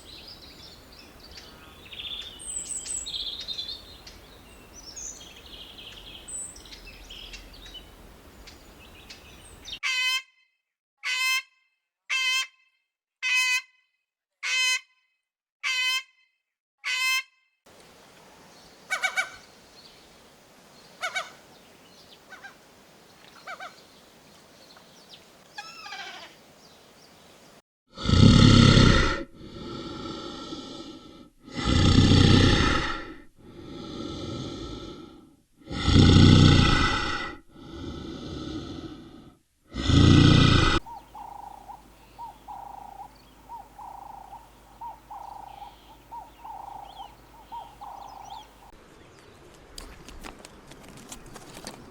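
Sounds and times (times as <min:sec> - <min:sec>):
rapidly pulsing animal call: 0:18.9 - 0:19.4, 0:39.9 - 0:48.8
animal calls: 0:18.9 - 0:19.5, 0:21.0 - 0:21.4, 0:22.3 - 0:22.6, 0:23.4 - 0:23.8, 0:25.5 - 0:26.4, 0:39.9 - 0:48.8.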